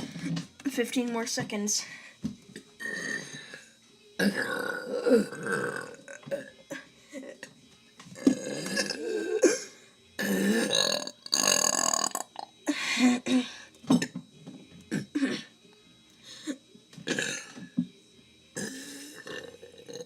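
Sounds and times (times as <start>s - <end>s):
person burping: 2.8s - 3.6s, 4.2s - 7.4s, 8.2s - 12.5s, 14.9s - 15.5s, 17.0s - 17.6s, 18.6s - 20.0s.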